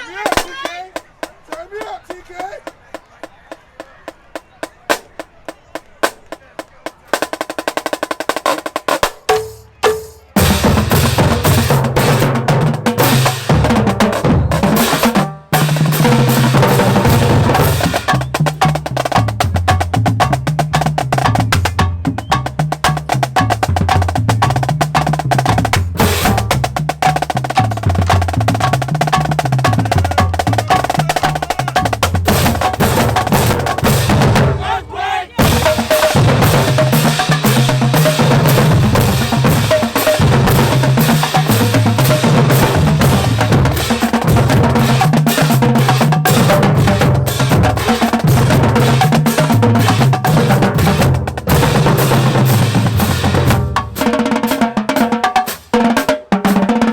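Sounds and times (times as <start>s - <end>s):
snare drum rolls and hits: 0.0s - 56.9s
bass drum pattern: 10.4s - 54.0s.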